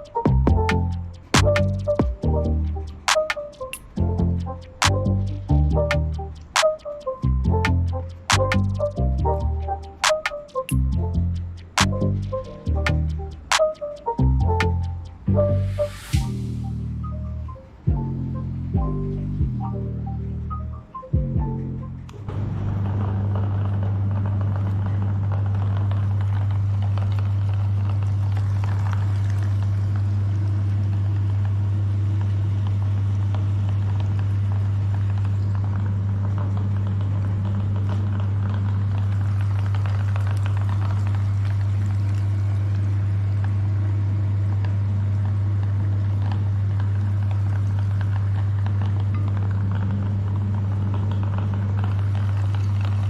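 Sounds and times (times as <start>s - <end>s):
faint crackles: 22.0s - 53.0s.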